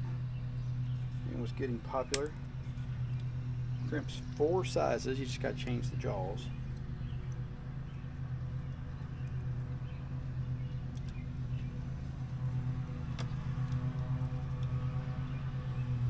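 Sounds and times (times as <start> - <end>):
low mechanical hum: 0.0 - 16.0
sharp click: 1.9 - 2.4.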